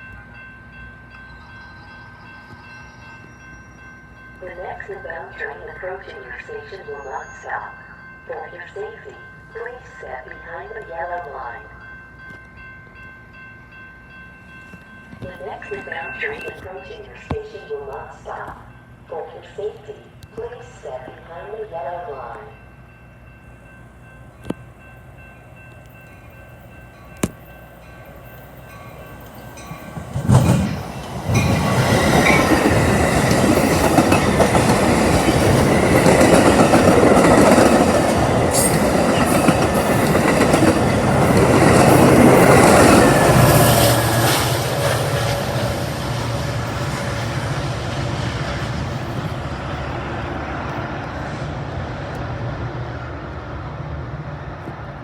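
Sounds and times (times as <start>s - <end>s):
train clattering on rails: 8.2s - 20.8s, 24.1s - 52.6s.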